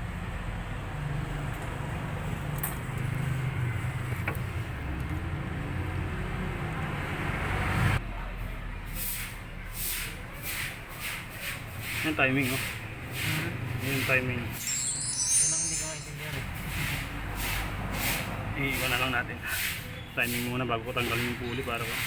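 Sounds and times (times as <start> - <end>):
motor vehicle rumble: 0.0 - 14.8, 15.5 - 21.4
rubbing or scraping strokes: 9.0 - 22.0.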